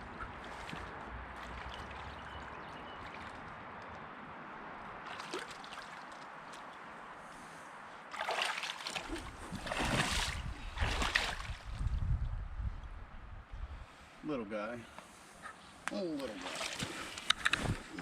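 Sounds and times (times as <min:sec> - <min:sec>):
running water: 0:00.0 - 0:04.2, 0:16.1 - 0:18.0
loud water splashes and sloshes: 0:00.0 - 0:07.0, 0:08.1 - 0:11.8, 0:16.2 - 0:17.2.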